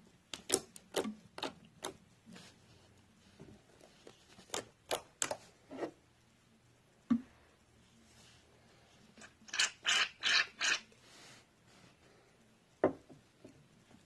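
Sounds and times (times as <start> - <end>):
slime squishing: 0.3 - 2.5, 3.9 - 5.5.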